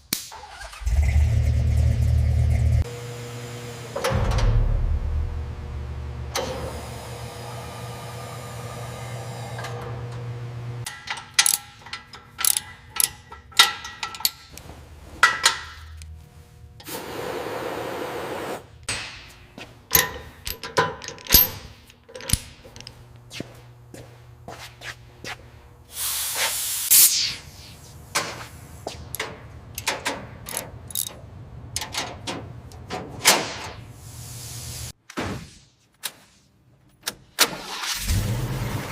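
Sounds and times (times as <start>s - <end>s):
low steady hum: 4.2s - 6.4s.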